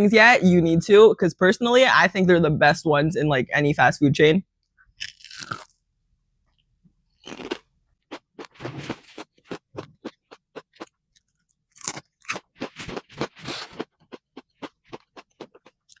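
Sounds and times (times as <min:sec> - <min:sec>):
chewing crispy fried food: 0:05.0 - 0:05.7, 0:07.2 - 0:16.0.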